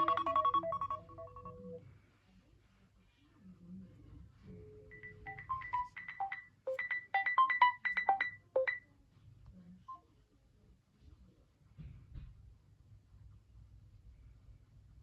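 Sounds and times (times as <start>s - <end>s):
phone ringtone melody: 0.0s - 1.8s, 4.9s - 8.8s.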